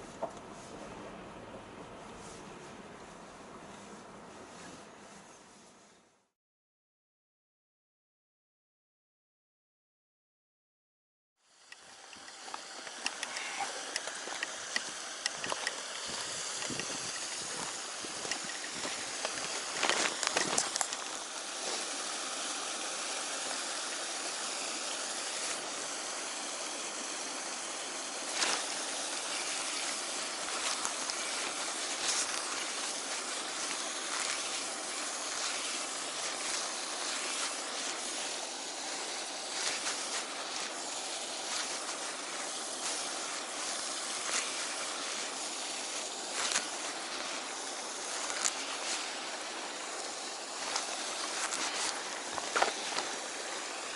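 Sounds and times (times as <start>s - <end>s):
flowing water: 11.4s - 53.9s
small clicks: 11.7s - 15.9s.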